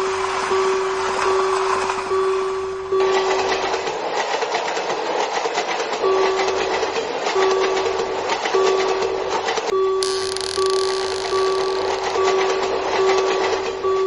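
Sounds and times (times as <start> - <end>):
level-crossing warning signal tone: 10.0 - 12.2.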